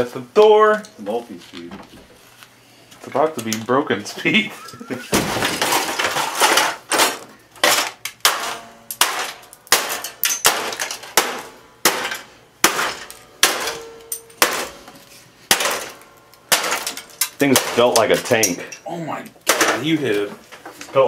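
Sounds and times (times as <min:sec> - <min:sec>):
metal fan being struck: 0:08.2 - 0:18.6.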